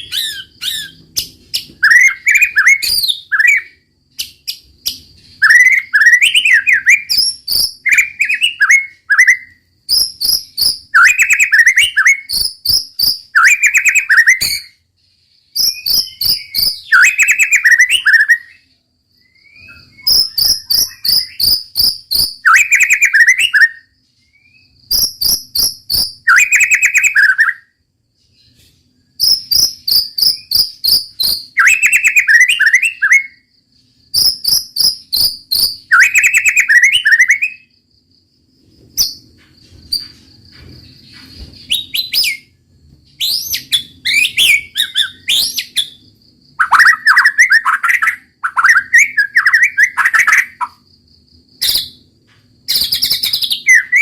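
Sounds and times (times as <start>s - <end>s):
songbird singing sharp notes: 0.0s - 14.8s, 15.4s - 28.6s, 29.2s - 37.7s.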